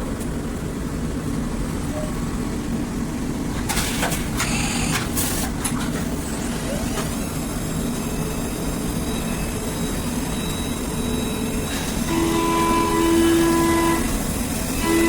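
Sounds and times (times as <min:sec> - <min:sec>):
milling machine running: 0:06.2 - 0:15.0
strong steady whining tone: 0:06.2 - 0:15.0.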